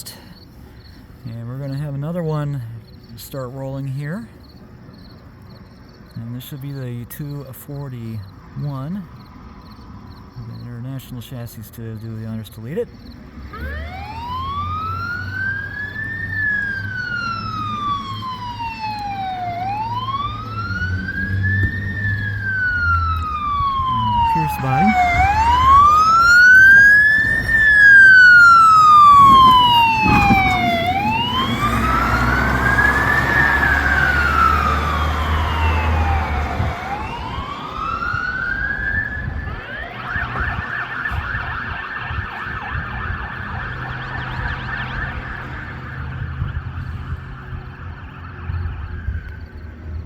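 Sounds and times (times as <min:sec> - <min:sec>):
truck engine rumbling: 0:00.0 - 0:50.0
fire engine siren wailing: 0:13.5 - 0:50.0.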